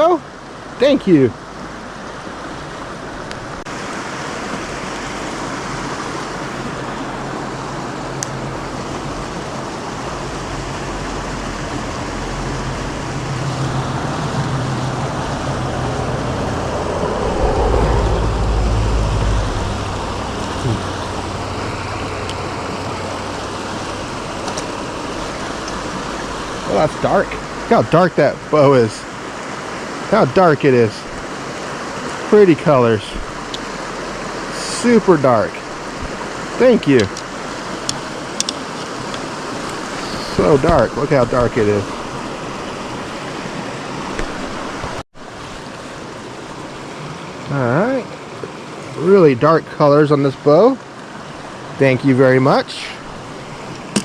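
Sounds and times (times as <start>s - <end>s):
stream rushing: 0.0s - 54.0s
low rumble: 12.0s - 24.4s.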